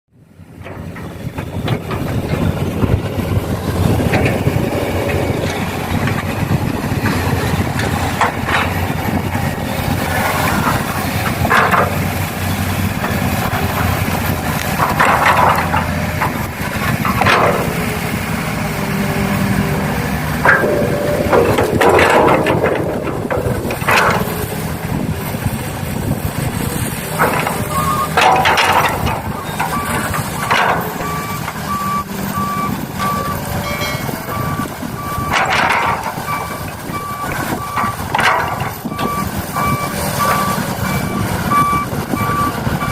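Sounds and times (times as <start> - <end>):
model excavator engine hum: 0.2 - 42.9
reversing beeper: 27.3 - 35.4, 36.3 - 42.9.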